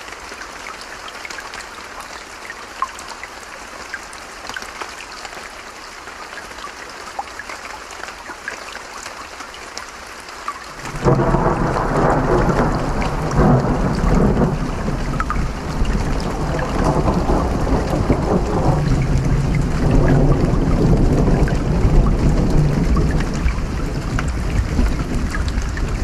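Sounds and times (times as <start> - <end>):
rain: 0.0 - 26.0
stream water flowing: 0.0 - 26.0
dripping: 10.5 - 26.0
thunder rumbling: 10.8 - 26.0.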